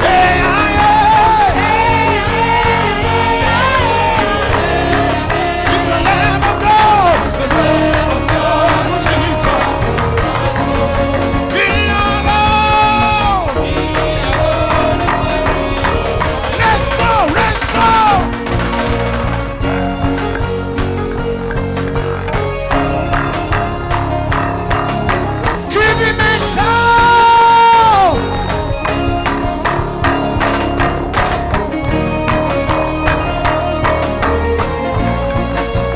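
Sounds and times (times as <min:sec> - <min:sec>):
solo voice singing: 0:00.0 - 0:18.4
drums: 0:00.0 - 0:35.9
guitar: 0:00.0 - 0:35.9
live worship band music: 0:00.0 - 0:35.9
sustained instrumental backing: 0:00.0 - 0:35.9.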